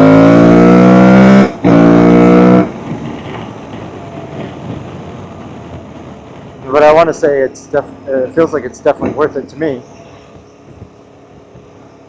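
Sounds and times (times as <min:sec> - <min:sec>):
motorcycle engine revving: 0:00.0 - 0:03.5.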